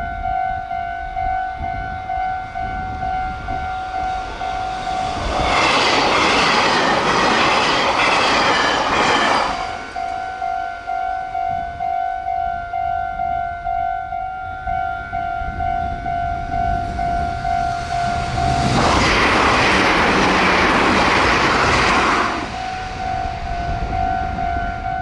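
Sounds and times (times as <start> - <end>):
level crossing warning bell: 0.0 - 25.0
train passing at high speed: 1.6 - 25.0.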